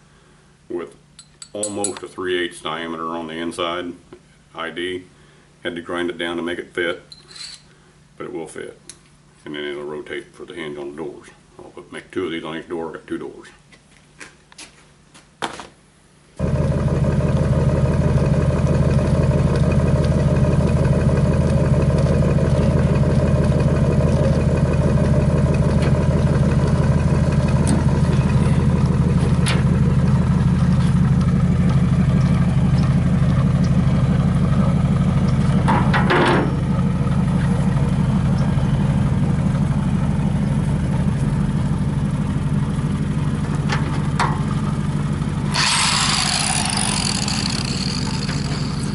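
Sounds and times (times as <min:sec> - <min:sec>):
machine humming: 0:16.4 - 0:48.9.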